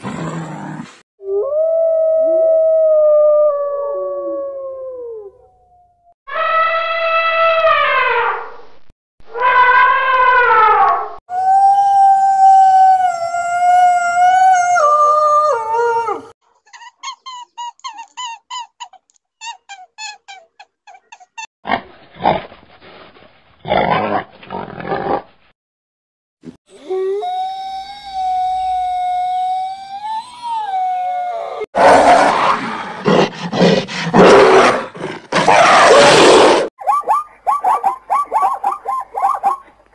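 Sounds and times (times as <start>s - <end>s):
dog howling: 9.4s - 16.4s
high chirping calls: 36.8s - 39.7s.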